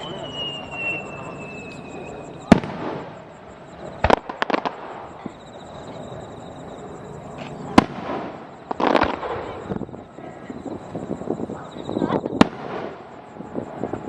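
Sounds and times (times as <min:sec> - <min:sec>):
fireworks bangs: 0:00.0 - 0:14.0
fireworks crackling: 0:00.0 - 0:14.0.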